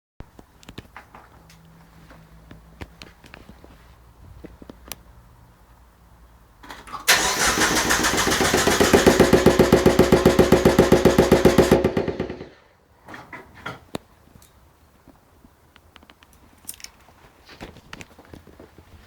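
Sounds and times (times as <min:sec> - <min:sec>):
car engine cranking: 0:06.8 - 0:12.5
pulsing knock under bonnet: 0:08.7 - 0:12.4.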